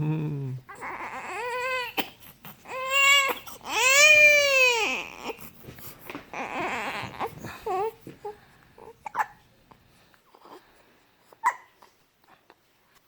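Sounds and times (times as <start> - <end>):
newborn baby crying: 0.7 - 5.6, 6.2 - 9.4.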